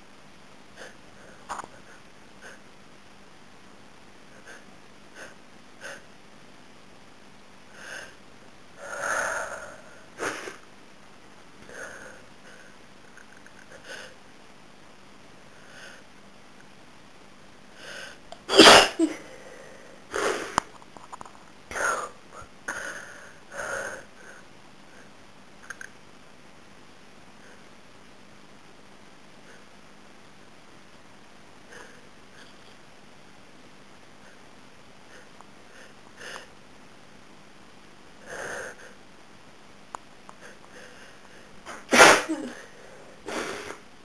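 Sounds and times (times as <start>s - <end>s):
woman sneezing: 18.5s - 19.3s, 41.7s - 42.7s
woman sniffling: 41.7s - 43.8s.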